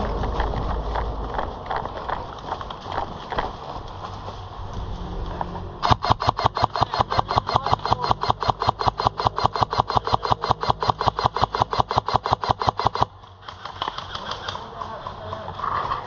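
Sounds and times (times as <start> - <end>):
airsoft gun full-auto burst: 5.8 - 14.6.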